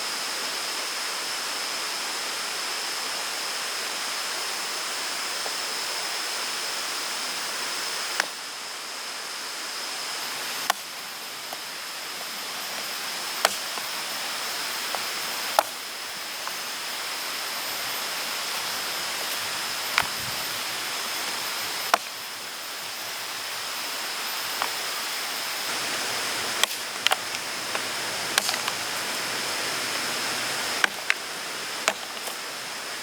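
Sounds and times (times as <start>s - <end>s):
steady rainfall: 10.0s - 33.0s.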